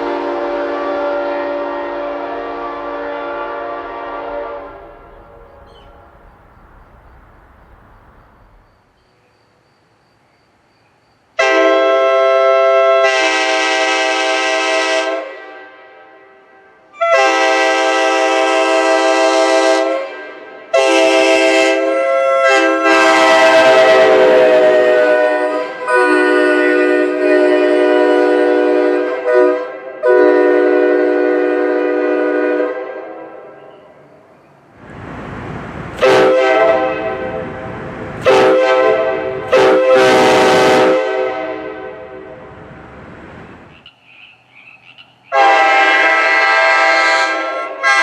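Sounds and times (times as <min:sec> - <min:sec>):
train horn blasts: 0:00.0 - 0:06.3, 0:11.4 - 0:34.1, 0:36.0 - 0:42.8, 0:45.3 - 0:48.0.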